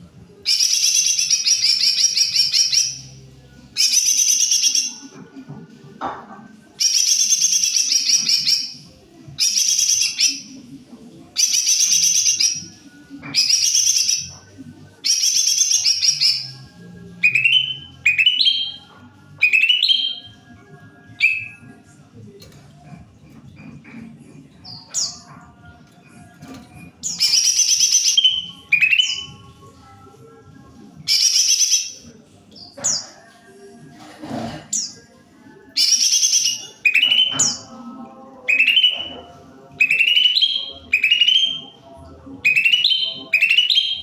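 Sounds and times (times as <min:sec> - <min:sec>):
bird chattering song: 0:00.5 - 0:03.2, 0:03.8 - 0:05.0, 0:06.8 - 0:08.8, 0:09.4 - 0:10.5, 0:11.4 - 0:12.7, 0:13.3 - 0:14.4, 0:15.0 - 0:16.6, 0:17.2 - 0:18.8, 0:19.4 - 0:20.3, 0:27.0 - 0:29.3, 0:31.1 - 0:33.1, 0:35.8 - 0:37.7, 0:38.5 - 0:41.8, 0:42.4 - 0:44.0.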